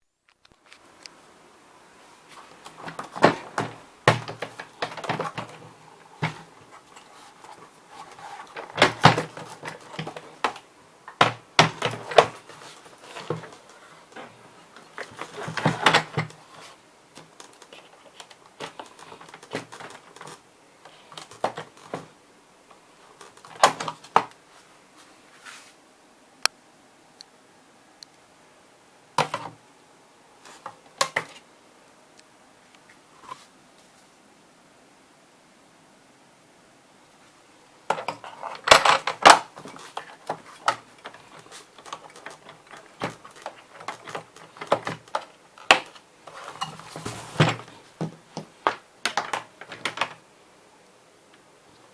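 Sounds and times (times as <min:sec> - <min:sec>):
hard plastic parts knocking: 0:02.7 - 0:07.0, 0:08.1 - 0:14.3, 0:37.9 - 0:46.0.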